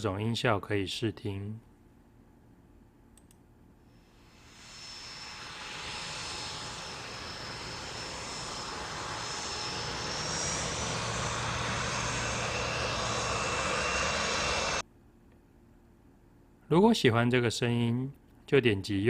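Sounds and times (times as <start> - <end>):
aircraft engine with high whine: 3.9 - 14.9.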